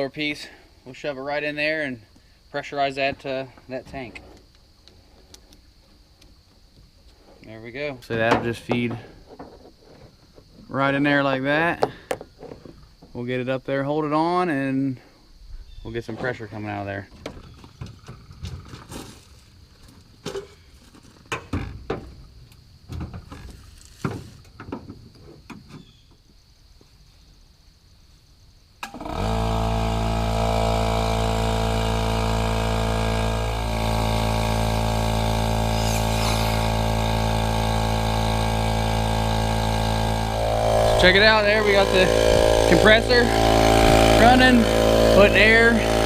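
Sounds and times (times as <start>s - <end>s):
air compressor running: 28.8s - 46.0s.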